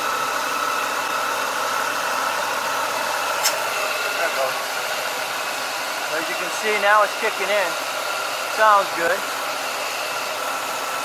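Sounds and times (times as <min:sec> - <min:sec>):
car engine idling with belt whine: 0:00.0 - 0:11.0
compressor clutch click: 0:03.4 - 0:03.9.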